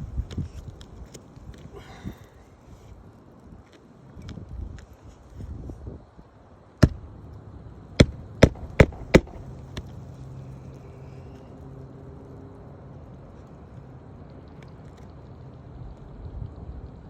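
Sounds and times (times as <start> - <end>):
hammer nailing roof shingle: 6.8 - 7.0, 8.0 - 10.0.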